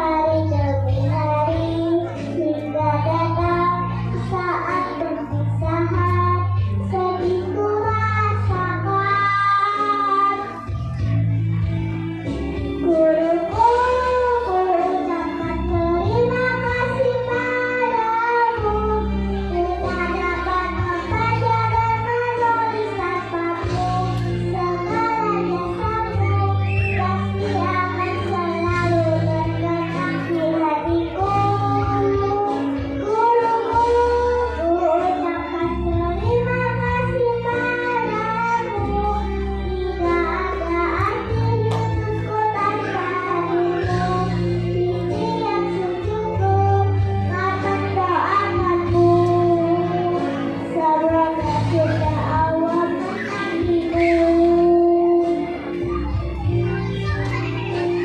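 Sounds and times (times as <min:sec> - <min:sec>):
instrumental accompaniment: 0:00.0 - 0:58.0
children's choir singing: 0:12.3 - 0:58.0.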